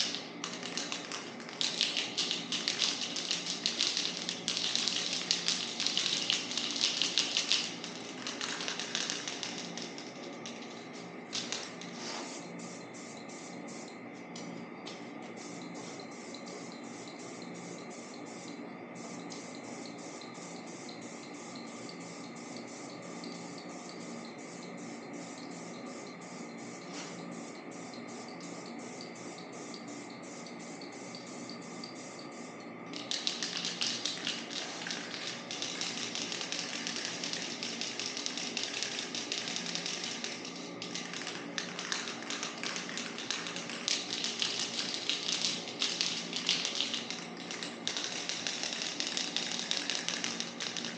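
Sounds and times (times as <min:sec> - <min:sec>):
spray can rattling: 0:00.0 - 0:12.1, 0:32.9 - 0:50.9.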